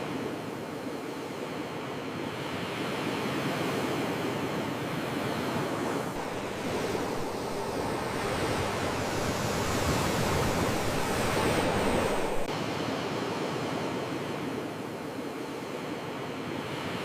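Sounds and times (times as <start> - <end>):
sea waves washing in: 0.0 - 17.0.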